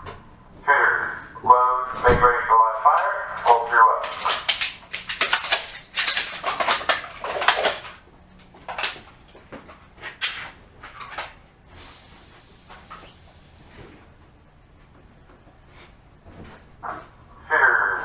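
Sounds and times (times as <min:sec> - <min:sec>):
pistols being loaded clicking: 0:03.5 - 0:09.4, 0:10.0 - 0:11.4.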